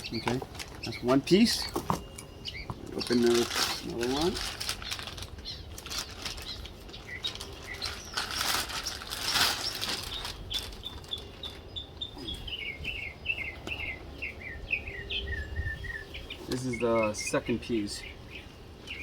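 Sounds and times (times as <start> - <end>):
packaging crinkling and rustling: 0.0 - 11.7
bird chirping: 0.0 - 19.0.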